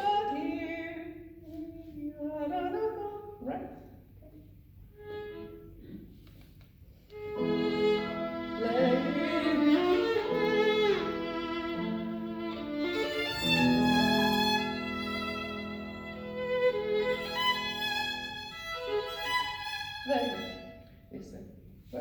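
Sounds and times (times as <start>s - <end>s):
solo violin playing: 4.9s - 5.7s, 7.1s - 21.0s.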